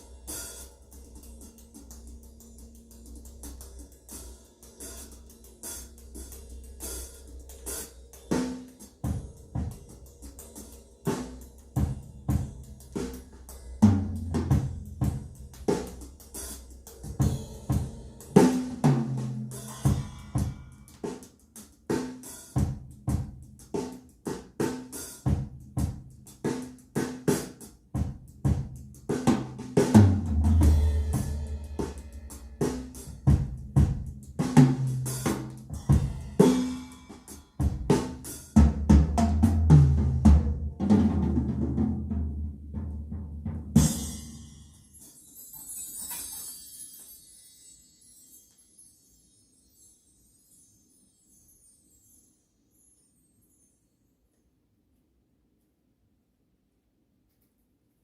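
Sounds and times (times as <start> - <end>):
drum kit through loudspeakers: 0.0 - 44.8.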